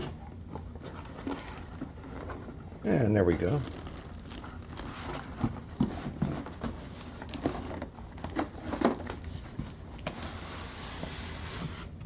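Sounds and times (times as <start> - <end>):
packing material crinkling: 0.8 - 10.3.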